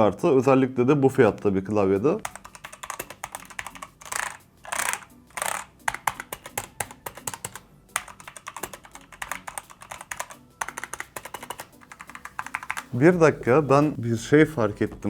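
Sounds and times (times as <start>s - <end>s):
mechanical keyboard typing: 2.2s - 13.0s.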